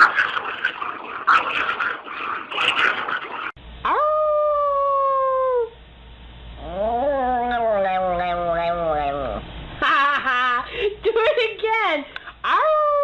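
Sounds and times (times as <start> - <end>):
rough scratchy noise: 0.0 - 3.6
dog howling: 6.6 - 9.4.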